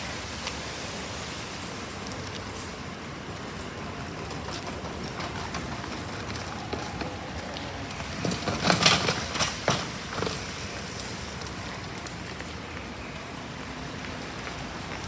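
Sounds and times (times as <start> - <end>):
rain hissing: 0.0 - 15.0
hard-soled footsteps: 3.6 - 11.1.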